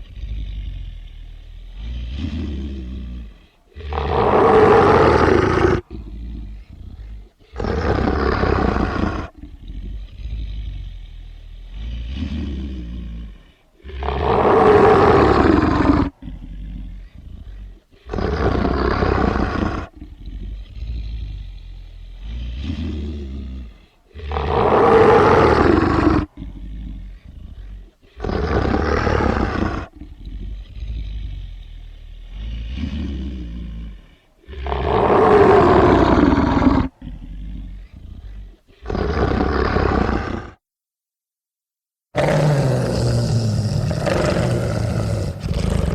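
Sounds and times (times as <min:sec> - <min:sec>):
creature growling: 0:01.7 - 0:40.6, 0:42.2 - 0:45.9
creature roaring: 0:03.8 - 0:06.2, 0:07.6 - 0:09.5, 0:13.8 - 0:16.6, 0:18.1 - 0:20.7, 0:24.2 - 0:27.0, 0:28.2 - 0:30.7, 0:32.4 - 0:40.6, 0:42.2 - 0:45.9.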